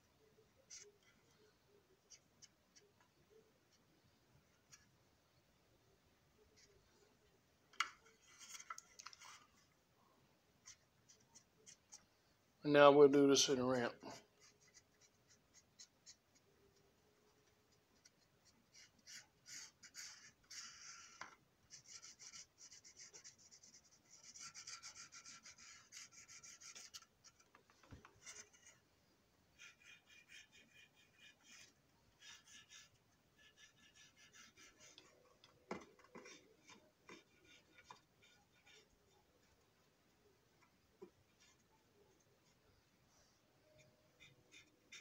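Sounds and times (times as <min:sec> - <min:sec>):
scratchy strokes on plastic: 0:17.8 - 0:28.8.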